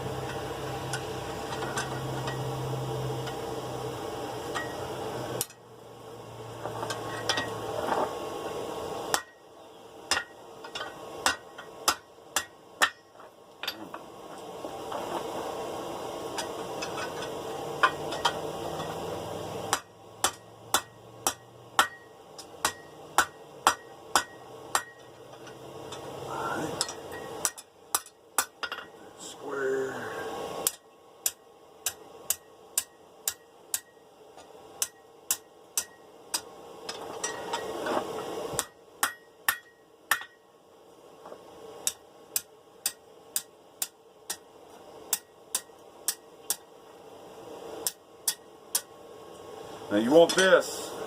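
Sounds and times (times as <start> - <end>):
hammer striking steel on anvil: 4.5 - 4.8, 5.4 - 5.6, 6.8 - 7.6, 9.1 - 9.4, 10.1 - 14.0, 16.4 - 19.0, 19.7 - 26.1, 26.8 - 29.0, 30.6 - 37.8, 38.6 - 40.5, 41.8 - 44.5, 45.1 - 46.7, 47.8 - 48.9, 50.2 - 50.6.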